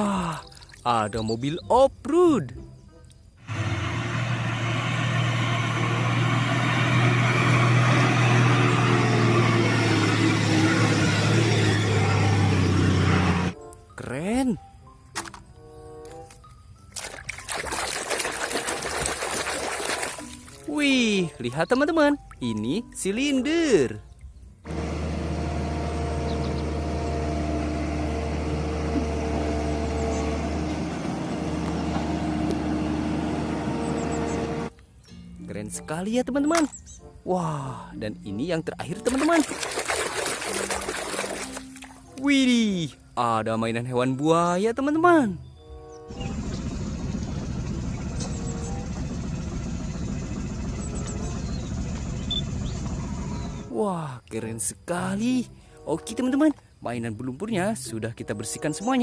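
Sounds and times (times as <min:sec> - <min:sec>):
small motor humming: 0:24.7 - 0:34.7, 0:46.1 - 0:53.7.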